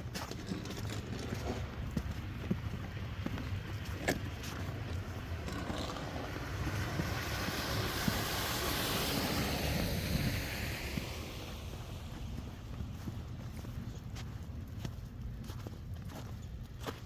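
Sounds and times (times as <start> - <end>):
steady low rumble: 0.0 - 17.0
car tyres hissing on road: 6.0 - 13.2.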